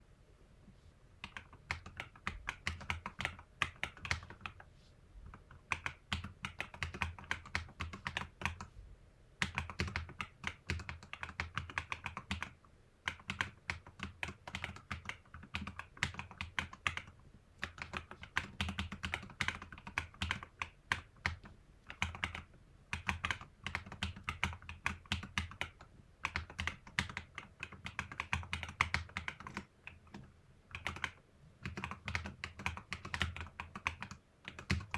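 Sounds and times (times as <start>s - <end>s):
typing on mechanical keyboard: 1.2s - 4.7s, 5.3s - 8.7s, 9.4s - 34.9s.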